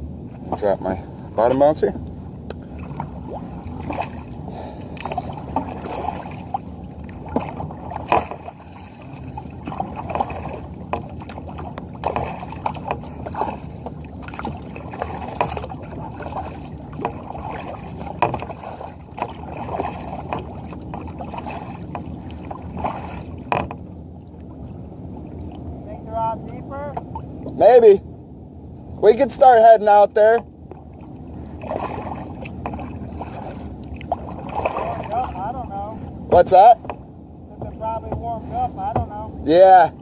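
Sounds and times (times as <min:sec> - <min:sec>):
water lapping against kayak hull: 0:00.0 - 0:40.0
small knocks and clicks: 0:23.4 - 0:23.8.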